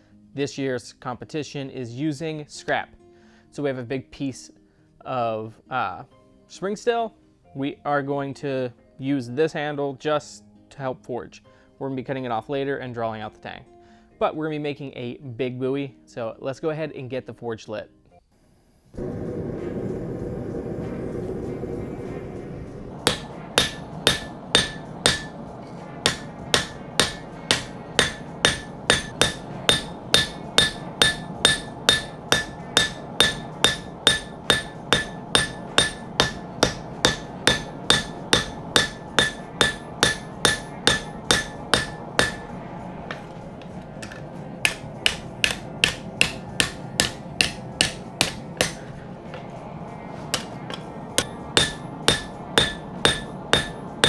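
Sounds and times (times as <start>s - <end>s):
steady rushing noise: 19.0s - 54.0s
hammer striking steel on anvil: 23.0s - 54.0s.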